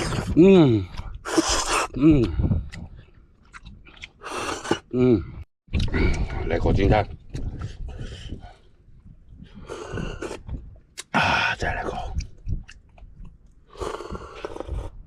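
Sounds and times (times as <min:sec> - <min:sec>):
person chewing and biting food: 0:00.0 - 0:04.9, 0:11.9 - 0:15.0.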